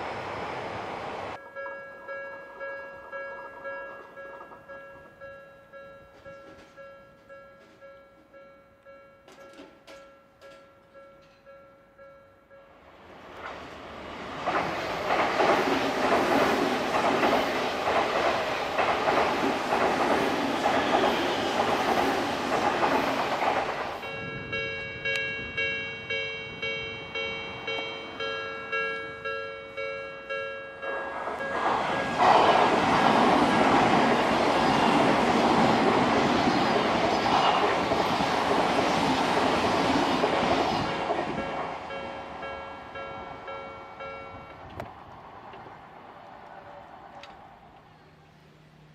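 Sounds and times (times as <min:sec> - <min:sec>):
level crossing warning bell: 0:01.4 - 0:12.8, 0:24.0 - 0:32.2, 0:41.3 - 0:44.6
train wheels clattering over rails: 0:06.1 - 0:07.9, 0:09.3 - 0:11.4, 0:13.4 - 0:24.0, 0:31.1 - 0:42.0.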